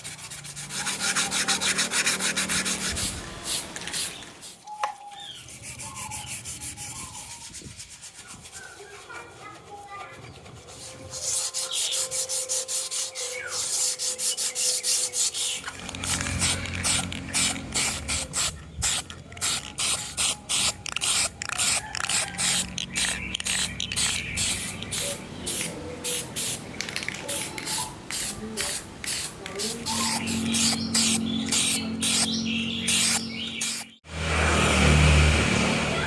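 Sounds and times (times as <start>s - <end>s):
short bursts of spray hiss: 2.5s - 4.6s, 15.3s - 26.6s, 27.4s - 32.3s.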